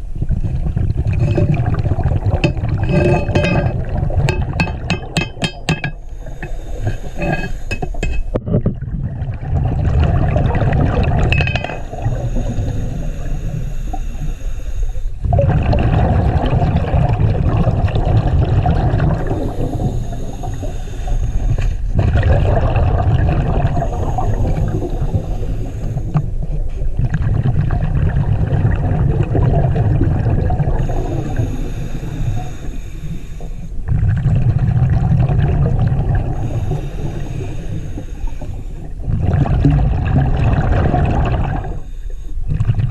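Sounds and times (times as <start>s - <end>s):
bubbles gurgling from regulator: 0.0s - 13.7s, 15.2s - 32.8s, 33.8s - 42.9s
regulator inhale hiss: 5.9s - 8.4s, 11.7s - 15.2s, 19.2s - 22.0s, 23.6s - 26.9s, 30.7s - 33.9s, 36.2s - 39.0s, 41.5s - 42.6s.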